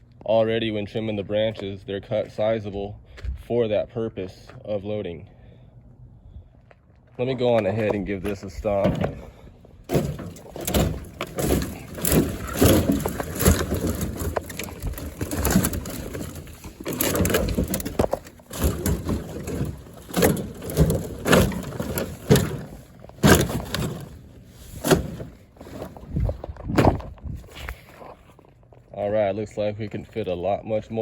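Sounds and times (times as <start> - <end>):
boots stomping on branches: 8.2 - 28.0
leaves and twigs crunching: 9.9 - 28.4.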